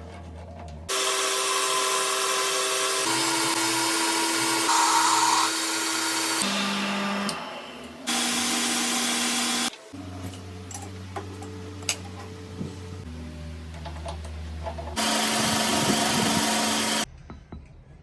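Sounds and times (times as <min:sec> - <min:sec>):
metal lathe machining: 0:00.9 - 0:07.4, 0:15.0 - 0:17.0.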